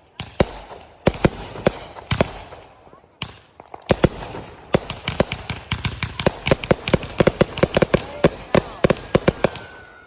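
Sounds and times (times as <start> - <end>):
fireworks bangs and crackling: 0.0 - 10.0.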